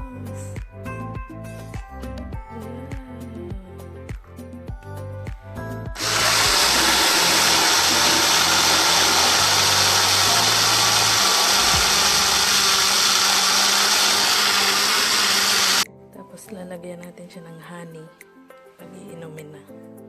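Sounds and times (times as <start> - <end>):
juicer motor running: 6.0 - 15.9.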